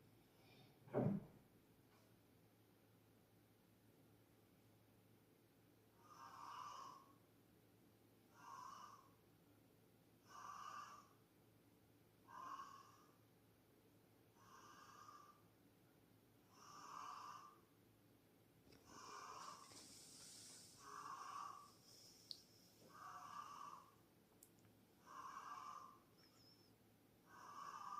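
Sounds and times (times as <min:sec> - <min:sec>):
faint snoring through wall: 0:05.9 - 0:07.3, 0:08.2 - 0:09.3, 0:10.2 - 0:11.4, 0:12.2 - 0:13.4, 0:14.3 - 0:15.6, 0:16.4 - 0:17.8, 0:18.7 - 0:24.1, 0:25.0 - 0:27.9.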